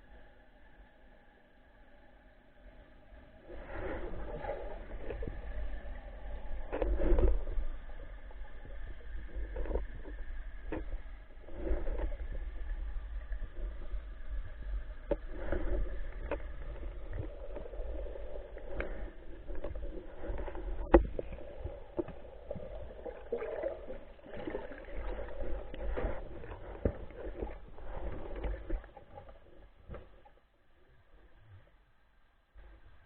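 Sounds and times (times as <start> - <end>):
muffled underwater gurgling water: 3.3 - 31.8.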